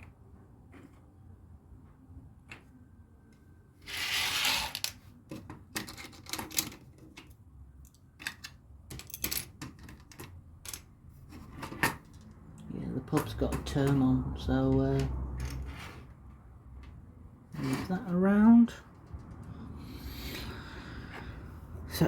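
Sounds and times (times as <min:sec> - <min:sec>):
loose plastic pieces rattling: 0:04.5 - 0:07.3, 0:07.9 - 0:10.8.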